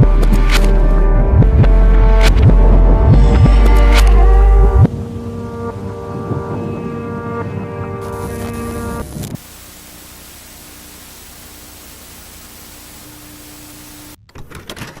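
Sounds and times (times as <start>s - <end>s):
music: 0.0s - 9.4s
static hiss: 7.9s - 14.2s
crackling glitchy bursts: 8.0s - 14.2s
faint hum: 9.4s - 14.2s.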